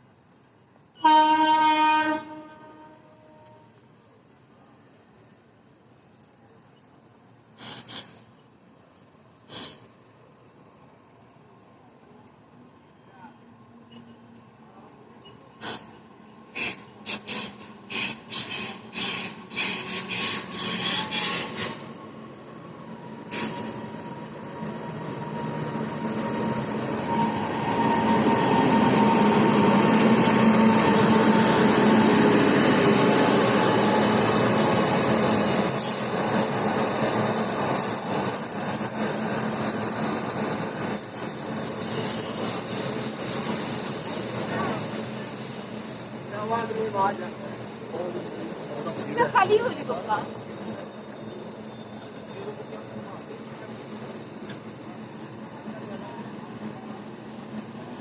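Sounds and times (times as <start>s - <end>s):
train rumble: 15.6s - 58.0s
train wheels clacking on rails: 16.5s - 21.9s
metal wheel squeals: 35.2s - 45.2s, 50.2s - 52.7s.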